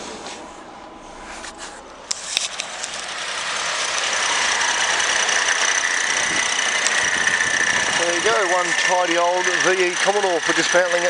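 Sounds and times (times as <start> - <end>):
car engine running: 0.0 - 11.0
high whine: 0.0 - 11.0
sharp clicks: 3.8 - 7.8.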